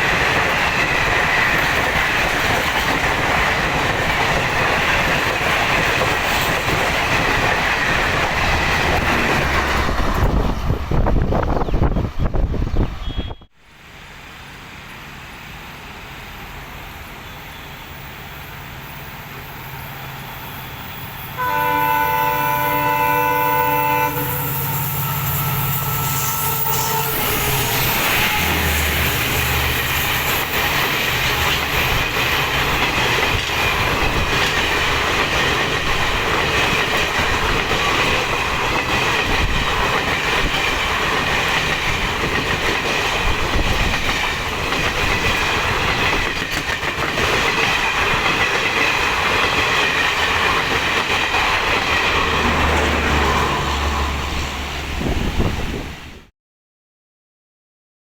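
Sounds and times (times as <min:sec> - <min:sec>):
train wheels clacking on rails: 0:00.0 - 0:11.3, 0:24.2 - 0:55.4
train horn: 0:13.0 - 0:13.5, 0:21.4 - 0:29.6, 0:52.4 - 0:55.2.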